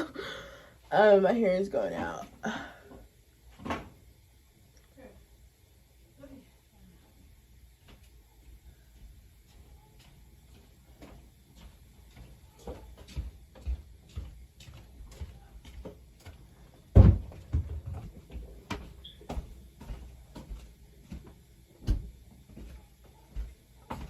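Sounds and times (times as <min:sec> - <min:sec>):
heavy thump: 0:16.9 - 0:17.8.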